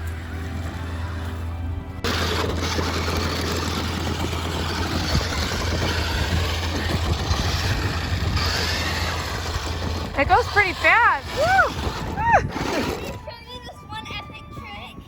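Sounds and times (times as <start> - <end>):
engine sound from toy speaker: 2.0 - 13.1
toy truck electric motors: 2.0 - 13.3.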